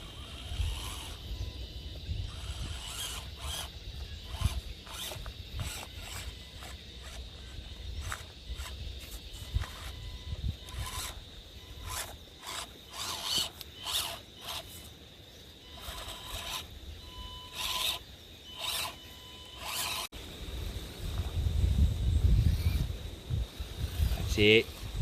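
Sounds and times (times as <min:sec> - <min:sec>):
small electric motor whine: 0:00.0 - 0:25.0
tyres scrabbling on rock: 0:04.3 - 0:10.0.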